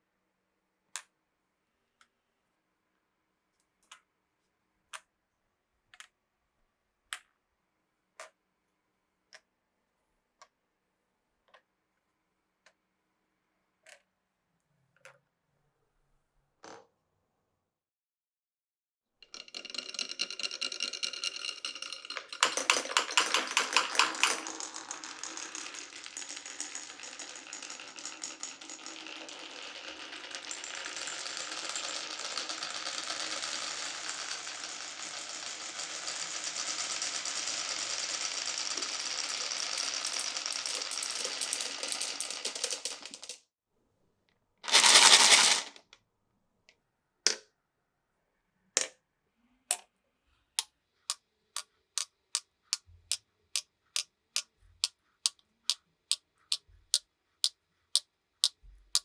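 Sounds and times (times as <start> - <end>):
marbles rolling on a wooden run: 19.2 - 43.4, 44.7 - 45.8, 56.4 - 56.7, 58.4 - 59.0.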